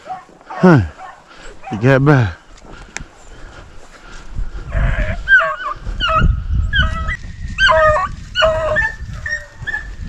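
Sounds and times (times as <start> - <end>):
hounds baying: 0.0 - 2.0, 4.7 - 10.0.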